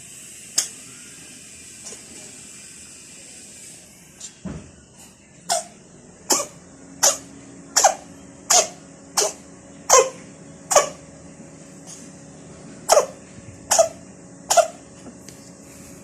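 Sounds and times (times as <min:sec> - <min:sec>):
cat coughing: 0:05.5 - 0:11.0, 0:12.9 - 0:14.8.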